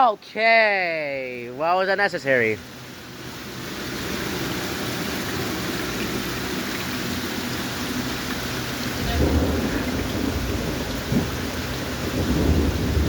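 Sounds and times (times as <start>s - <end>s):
heavy rain pouring: 0.0s - 13.0s
low thunder rumble: 9.0s - 13.0s.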